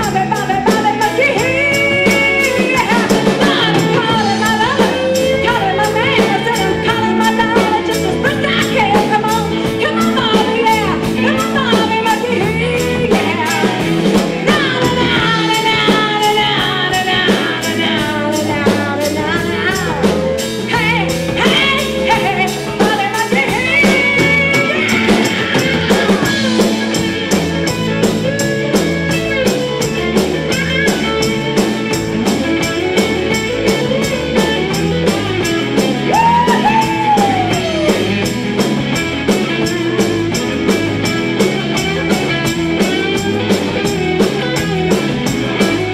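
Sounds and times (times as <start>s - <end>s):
person singing: 0.0s - 27.2s, 32.6s - 38.4s
live rock band playing: 0.0s - 45.9s
steady drum beat: 0.0s - 45.9s.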